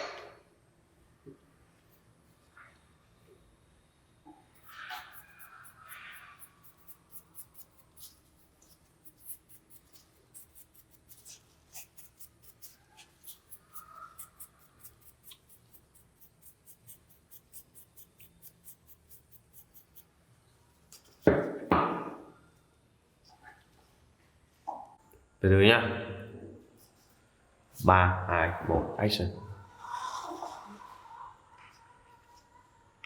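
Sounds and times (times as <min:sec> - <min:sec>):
light scratching strokes: 0:04.6 - 0:21.3.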